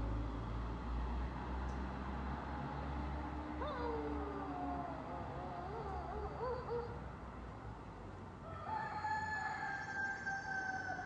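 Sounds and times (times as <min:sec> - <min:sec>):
rooster crowing: 0:08.4 - 0:11.0.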